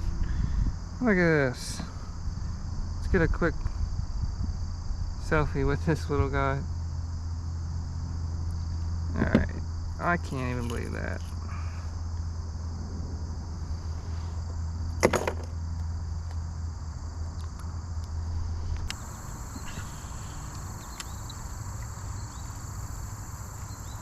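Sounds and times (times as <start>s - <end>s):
insects chirring: 0.0s - 24.0s
low hum: 6.7s - 24.0s.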